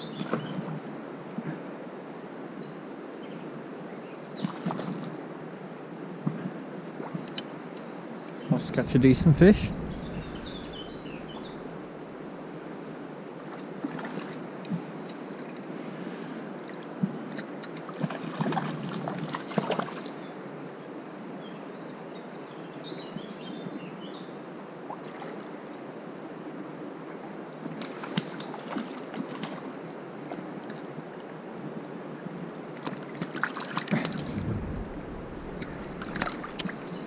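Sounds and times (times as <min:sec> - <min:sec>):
small river running: 0:00.0 - 0:21.4, 0:24.3 - 0:37.0
bird chirping: 0:08.3 - 0:12.0, 0:34.2 - 0:37.0.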